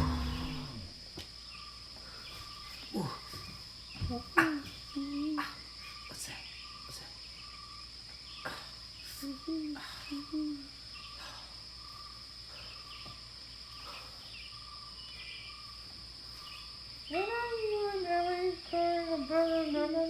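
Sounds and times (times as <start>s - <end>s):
low wavering hooting call: 0.0s - 1.0s
faint insect chirps: 0.0s - 20.0s
insects chirring: 0.0s - 20.0s.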